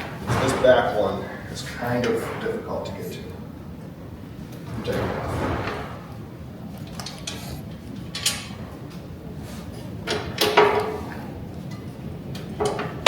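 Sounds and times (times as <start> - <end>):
low steady shop hum: 0.0 - 13.0
metal parts clacking: 6.8 - 8.6.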